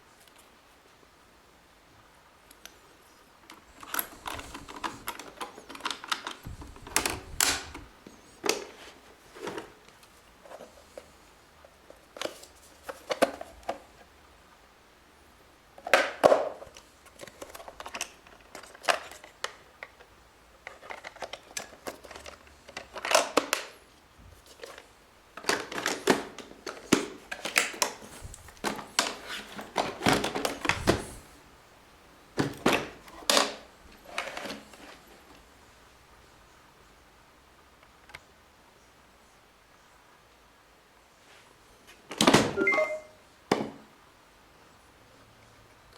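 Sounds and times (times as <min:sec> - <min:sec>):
plastic parts clicking and rattling: 0:03.5 - 0:08.7, 0:15.8 - 0:23.7, 0:25.4 - 0:31.1.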